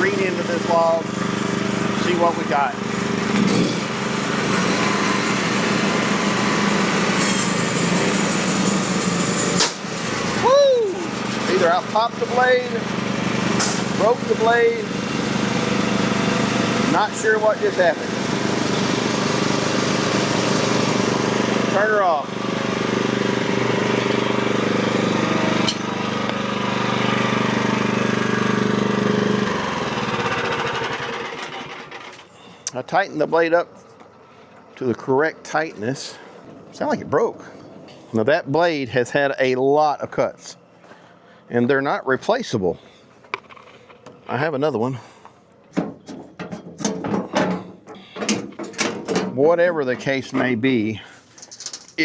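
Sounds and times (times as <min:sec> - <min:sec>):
band blade sawing log: 0:00.0 - 0:10.4
bandsaw mill engine humming: 0:00.0 - 0:41.5.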